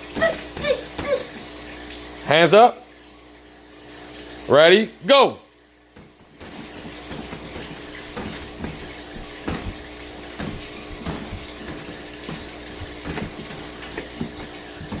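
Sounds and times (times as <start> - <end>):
punch thuds: 6.0 - 15.0.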